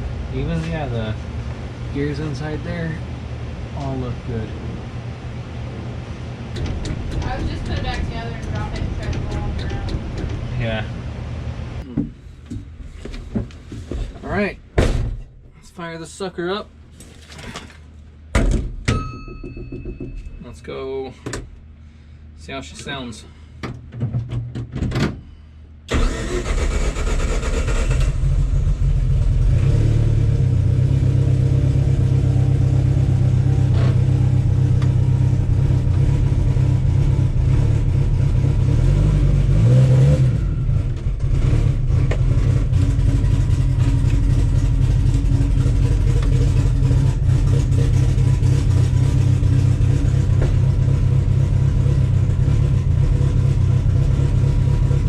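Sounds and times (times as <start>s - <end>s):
car engine starting and idling: 0.0s - 11.8s, 25.8s - 55.0s
engine revving: 25.9s - 55.0s.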